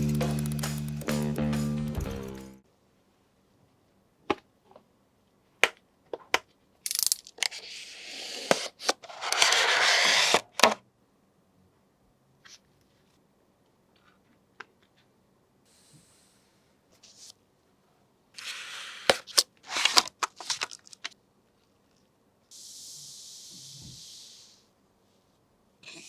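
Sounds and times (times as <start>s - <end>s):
scattered clicks: 0.0s - 2.6s
steady high hiss: 22.5s - 24.7s.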